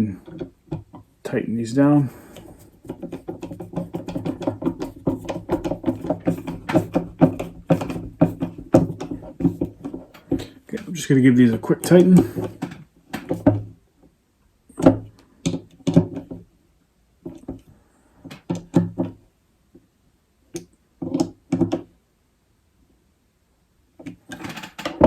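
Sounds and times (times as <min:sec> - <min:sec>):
hard plastic parts knocking: 0:00.2 - 0:01.1, 0:02.0 - 0:13.8, 0:14.8 - 0:16.5, 0:18.3 - 0:19.2, 0:21.0 - 0:21.9, 0:24.0 - 0:25.0.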